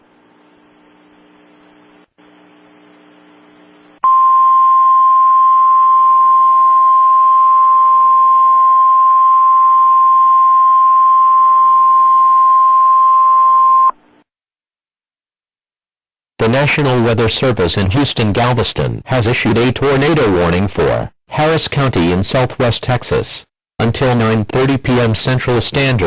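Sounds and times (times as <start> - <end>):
low radio hum: 0.0 - 6.7.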